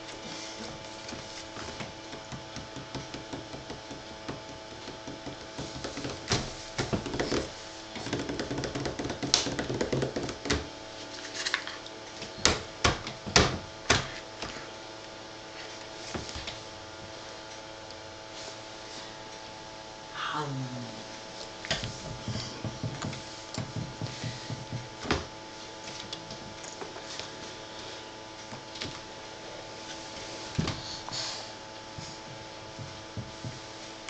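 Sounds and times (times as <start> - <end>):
faint hum: 0.0 - 34.0
taps and knocks: 1.1 - 10.7, 12.3 - 14.5, 21.7 - 25.3, 32.3 - 33.6.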